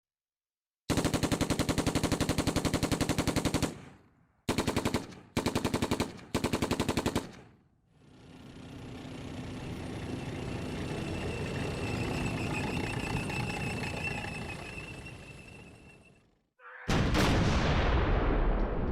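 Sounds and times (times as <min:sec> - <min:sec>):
rapid automatic gunfire: 0:00.9 - 0:07.6.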